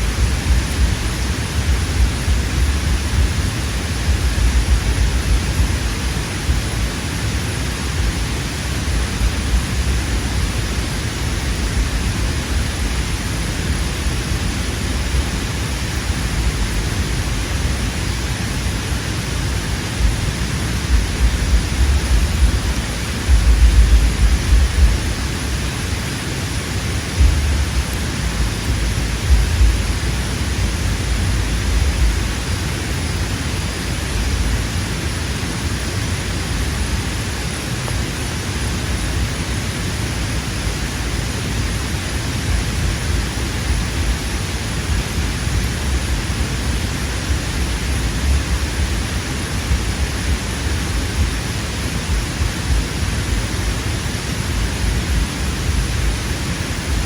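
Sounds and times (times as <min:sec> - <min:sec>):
wind buffeting microphone: 0:00.0 - 0:15.4, 0:18.9 - 0:25.7, 0:27.2 - 0:33.3.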